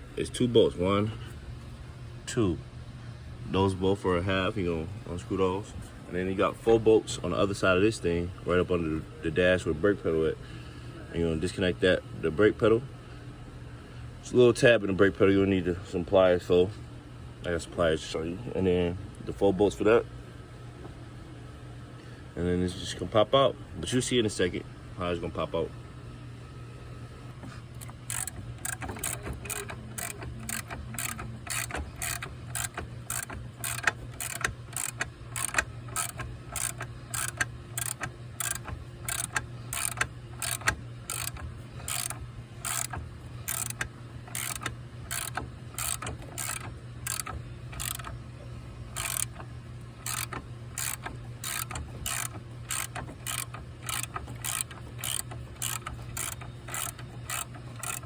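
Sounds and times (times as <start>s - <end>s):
steady low hum: 0.0s - 58.0s
ratchet wrench clicking: 27.8s - 48.2s, 49.0s - 58.0s.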